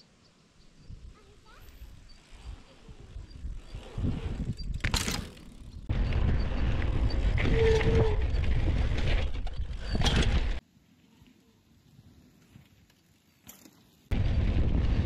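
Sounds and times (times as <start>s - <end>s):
bike creaking and clicking: 3.1s - 10.6s, 12.2s - 14.1s.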